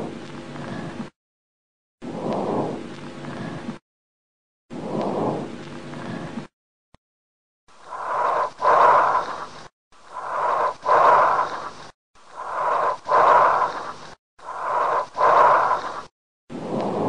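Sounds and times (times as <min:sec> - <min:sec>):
harsh hollow breathing: 0:07.8 - 0:16.1.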